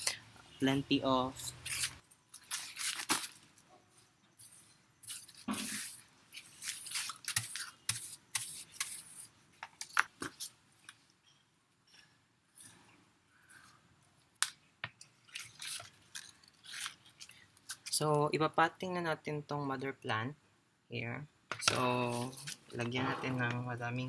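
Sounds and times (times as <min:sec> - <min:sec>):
hands rustling potting soil: 0:01.3 - 0:11.0, 0:21.7 - 0:23.9.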